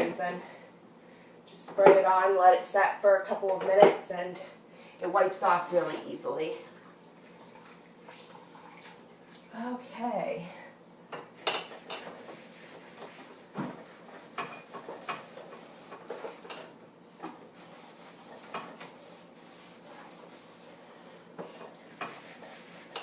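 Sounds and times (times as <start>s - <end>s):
cloth scrubbing a surface: 11.8s - 16.5s, 17.4s - 23.0s.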